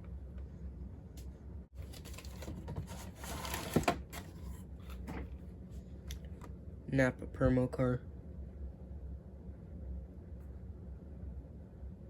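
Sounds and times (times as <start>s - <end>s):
low steady hum: 0.0s - 12.0s
packaging rustling: 1.8s - 4.4s.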